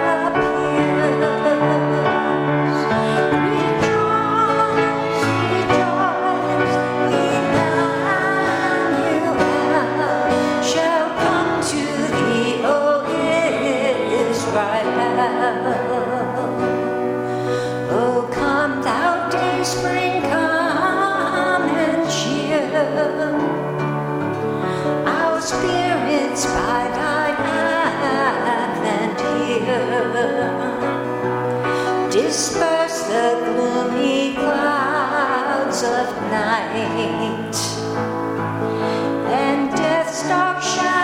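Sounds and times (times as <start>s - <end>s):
voices singing a slow hymn: 0.0s - 16.8s.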